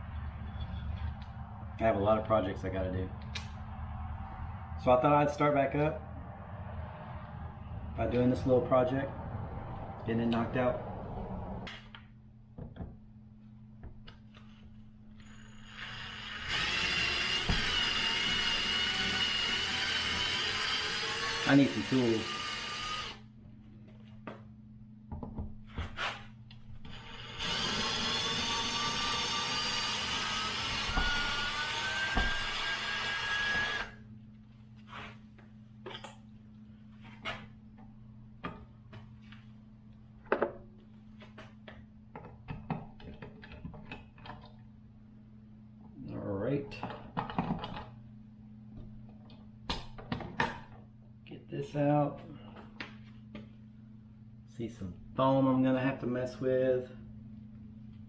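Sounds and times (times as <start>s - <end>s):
steady low hum: 0.0s - 58.0s
small motor whining: 15.3s - 23.2s, 26.9s - 34.0s.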